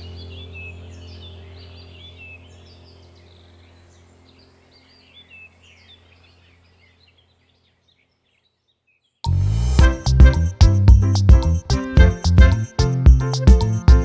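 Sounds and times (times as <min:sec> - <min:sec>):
low steady hum: 0:00.0 - 0:06.4
small birds chirping: 0:00.0 - 0:09.3.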